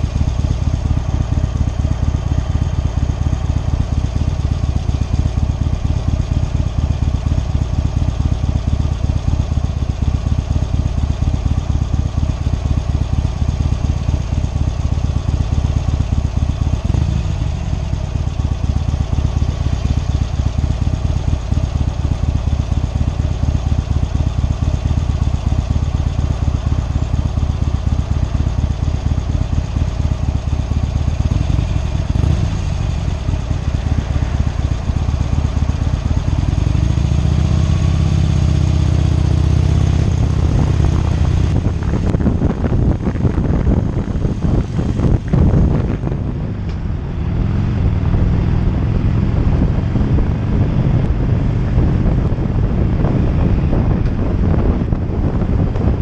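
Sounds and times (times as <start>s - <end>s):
motorcycle engine cruising: 0.0s - 56.0s.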